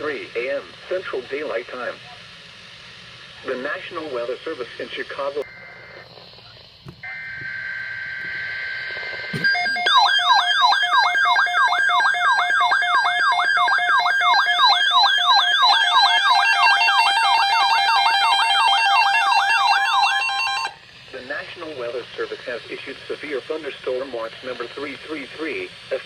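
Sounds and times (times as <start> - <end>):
two-pitch data warble: 5.1 - 21.4
electronic siren alarm: 5.4 - 20.8.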